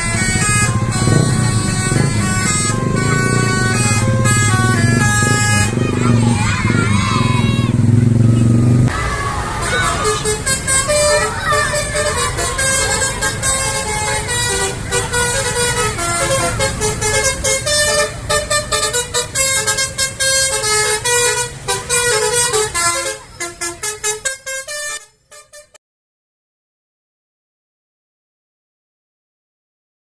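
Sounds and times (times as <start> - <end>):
multi-tone air horn melody: 0.0 - 25.8.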